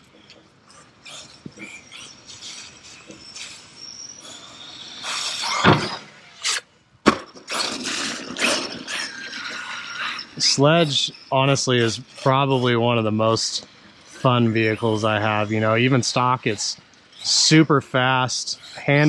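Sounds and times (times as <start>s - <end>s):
electric motor whining: 0.0s - 6.6s.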